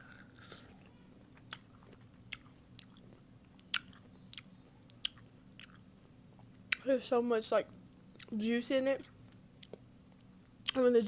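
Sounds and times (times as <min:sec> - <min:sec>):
faint low hum: 0:00.0 - 0:11.0
chewing pickle: 0:00.1 - 0:06.9.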